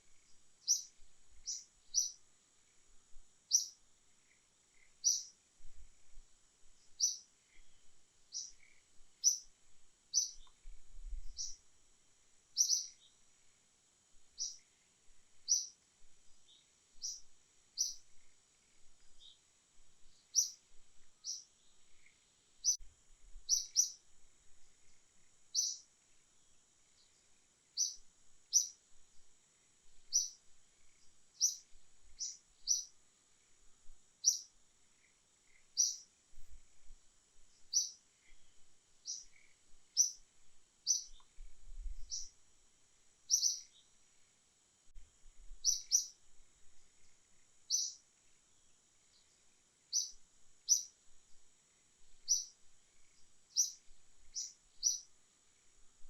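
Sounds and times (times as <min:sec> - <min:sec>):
bird chirping: 0:00.1 - 0:02.8, 0:03.5 - 0:05.4, 0:06.8 - 0:09.5, 0:10.1 - 0:11.7, 0:12.5 - 0:13.2, 0:14.3 - 0:14.8, 0:15.4 - 0:15.8, 0:16.4 - 0:19.4, 0:20.0 - 0:20.6, 0:21.2 - 0:22.8, 0:23.5 - 0:24.0, 0:24.8 - 0:25.9, 0:26.9 - 0:28.8, 0:30.1 - 0:33.0, 0:34.2 - 0:36.1, 0:37.5 - 0:40.2, 0:40.8 - 0:42.4, 0:43.3 - 0:44.0, 0:45.6 - 0:46.2, 0:47.0 - 0:48.0, 0:48.6 - 0:51.0, 0:52.2 - 0:55.1.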